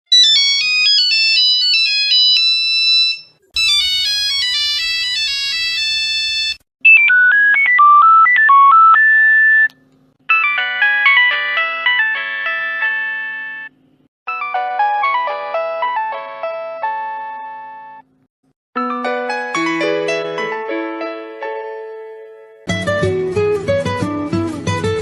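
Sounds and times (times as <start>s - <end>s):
phone ringtone melodies: 0.1s - 9.7s, 10.3s - 18.0s, 18.8s - 21.0s.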